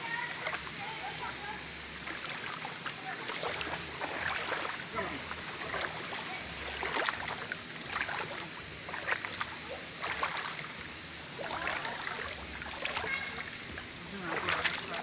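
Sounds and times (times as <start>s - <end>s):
creek water running: 0.0s - 15.0s
water splashes and gurgles: 0.0s - 15.0s.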